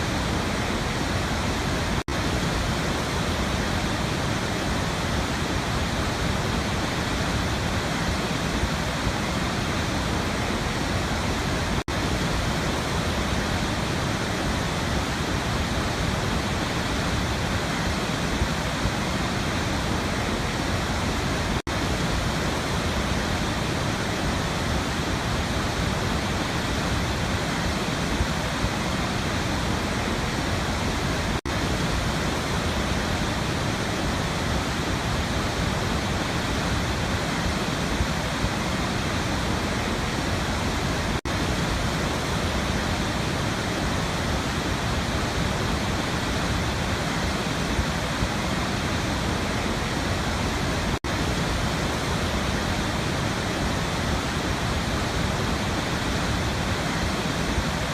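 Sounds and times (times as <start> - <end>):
waterfall rushing: 0.0 - 57.9.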